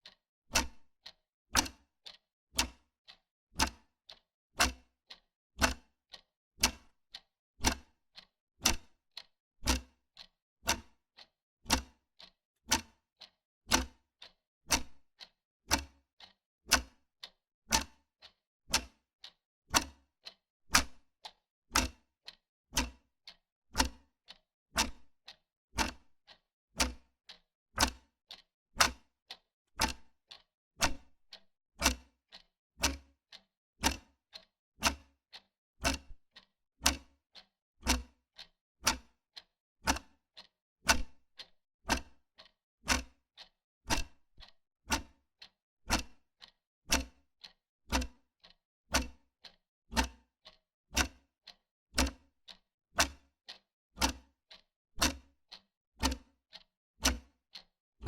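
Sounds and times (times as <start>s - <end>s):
wall clock ticking: 6.6s - 6.9s, 16.7s - 17.0s, 17.7s - 18.0s, 25.8s - 27.0s, 27.8s - 36.2s, 36.8s - 54.3s.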